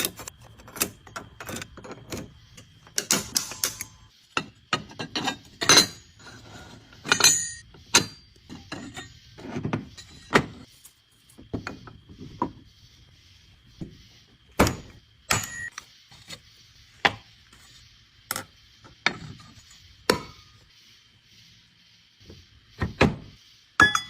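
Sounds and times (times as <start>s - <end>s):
faint high whine: 5.2s - 24.0s.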